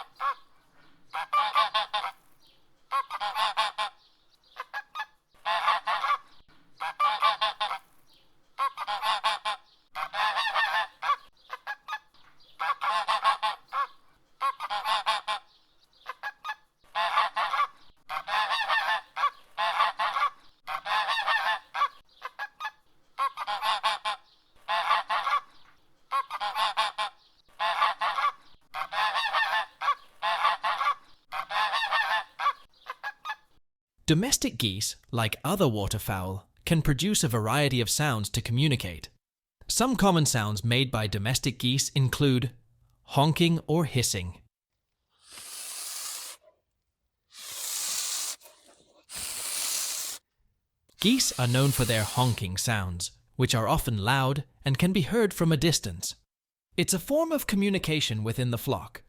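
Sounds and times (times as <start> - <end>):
goose honking: 2.9 - 4.0, 8.6 - 11.8, 12.6 - 15.5, 45.3 - 46.4, 51.0 - 52.5.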